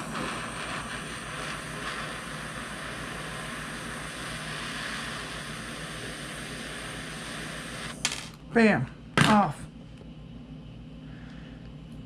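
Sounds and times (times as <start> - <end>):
heating tool blowing hiss: 0.0 - 8.3
faint electrical hum: 0.0 - 12.0.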